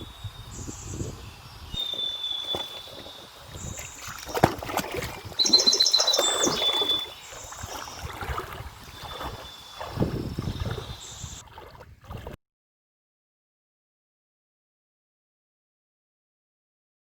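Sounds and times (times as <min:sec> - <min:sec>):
bird chirping: 0:00.0 - 0:04.4, 0:05.3 - 0:11.4
water splashing and sloshing: 0:01.8 - 0:12.4.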